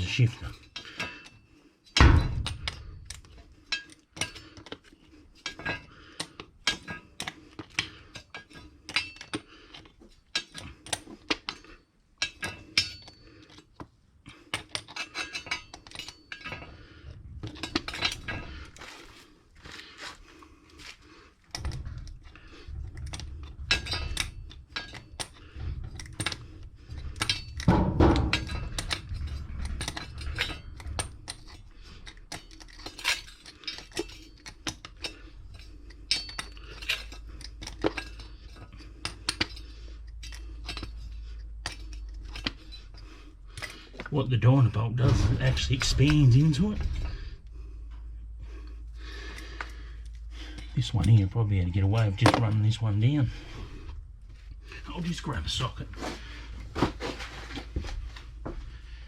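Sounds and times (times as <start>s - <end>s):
wrench clinking on metal nut: 14.5s - 16.8s, 21.5s - 44.1s
low rumbling noise: 44.1s - 59.0s.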